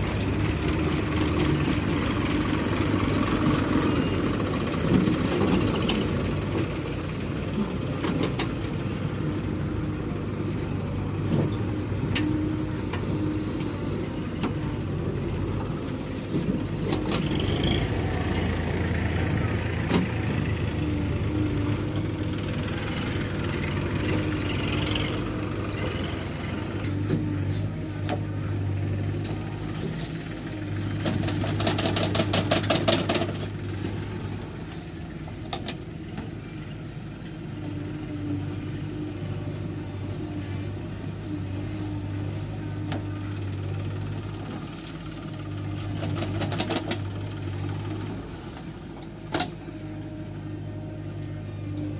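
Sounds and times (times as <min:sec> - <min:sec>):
heavy machinery diesel engine: 0:00.0 - 0:51.9.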